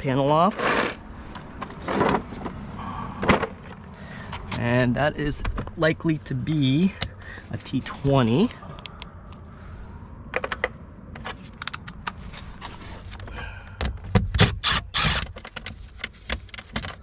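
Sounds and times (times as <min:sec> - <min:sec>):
short scrape: 0:00.5 - 0:01.0.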